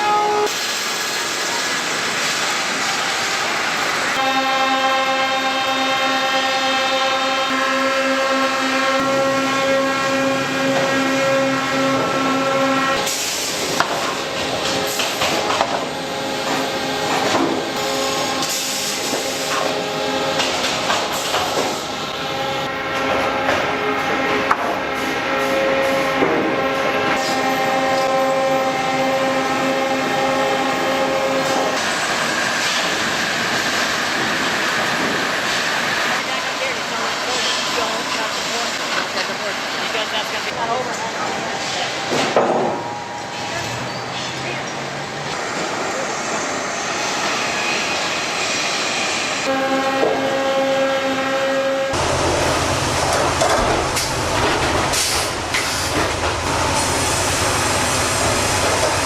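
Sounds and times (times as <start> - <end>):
industrial machinery humming: 4.0 - 59.0.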